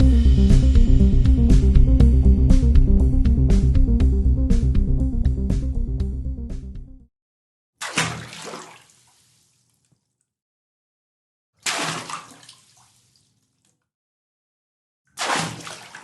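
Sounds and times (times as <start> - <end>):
water splashing into water: 7.8 - 10.1, 11.6 - 13.7, 15.2 - 16.0
water sloshing and pattering: 7.8 - 10.2, 11.6 - 13.8, 15.2 - 16.0.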